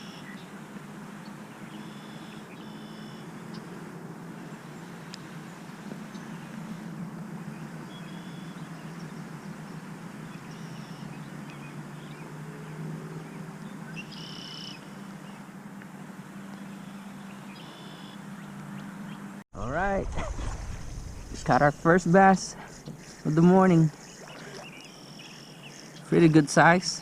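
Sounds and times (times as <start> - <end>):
short high bird calls: 14.0 - 14.9
steady low hum: 19.6 - 26.0.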